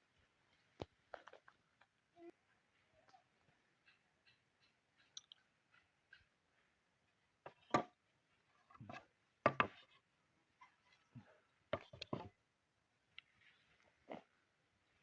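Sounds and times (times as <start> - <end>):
faint clicks: 3.8 - 6.3
sharp knocks on wood: 8.9 - 9.7.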